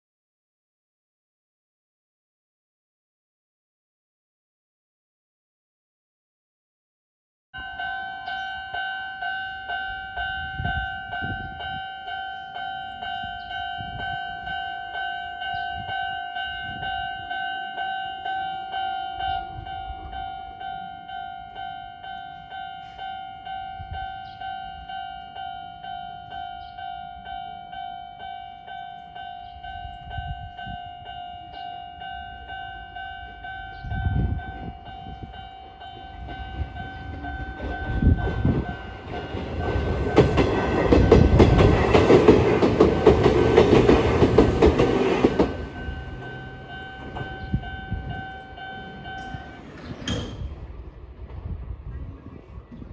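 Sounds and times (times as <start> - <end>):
level crossing alarm bell: 7.6 - 50.3
train rumbling: 22.4 - 52.9.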